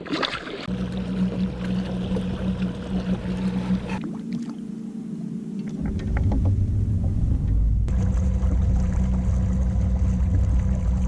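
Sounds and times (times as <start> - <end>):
water noise: 0.0 - 11.0
deep rumble: 0.7 - 4.1, 5.6 - 11.0
electric boat motor humming: 0.7 - 11.0.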